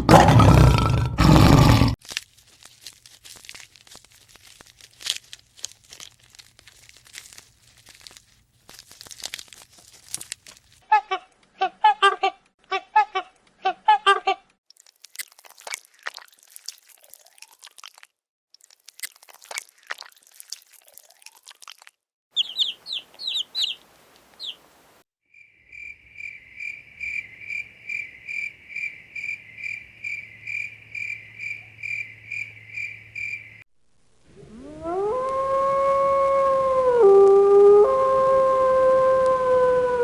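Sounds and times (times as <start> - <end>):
crackling crunches: 0.2 - 10.8, 14.7 - 22.0
high chirps: 22.4 - 23.8, 24.4 - 24.6
dog howling: 34.4 - 40.0.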